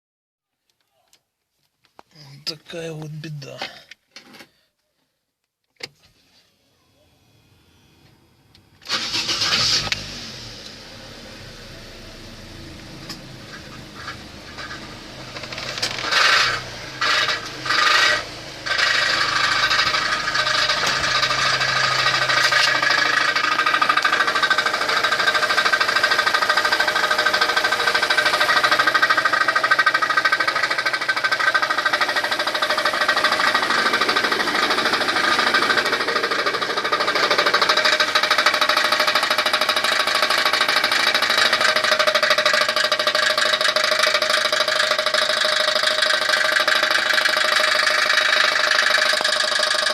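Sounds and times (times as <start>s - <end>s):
petrol engine knocking: 13.0s - 49.9s.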